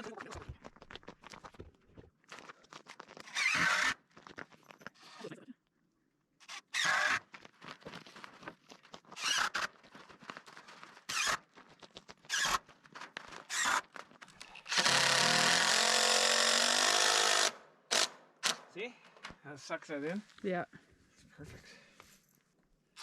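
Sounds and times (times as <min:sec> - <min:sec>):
power drill driving screw into wood: 0:03.2 - 0:04.0, 0:06.4 - 0:07.3, 0:09.2 - 0:09.7, 0:11.1 - 0:11.4, 0:12.3 - 0:12.6, 0:13.5 - 0:13.8, 0:14.7 - 0:18.7.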